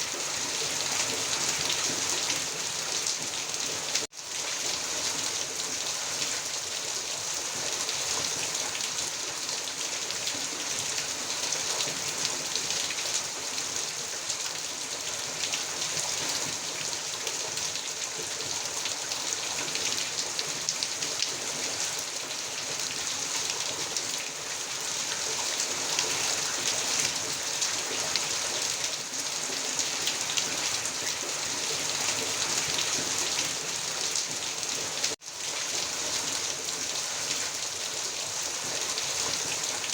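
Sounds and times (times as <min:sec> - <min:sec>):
heavy rain falling: 0:15.0 - 0:39.9.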